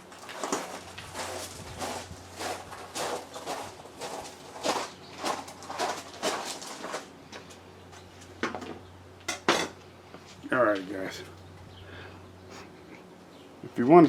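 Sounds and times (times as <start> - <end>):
rustles and knocks of handling: 0.0 - 8.8.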